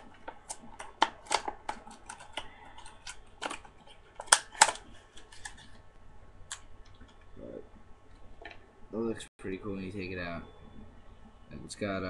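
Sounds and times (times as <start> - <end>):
plastic packaging crackling: 0.0 - 5.9.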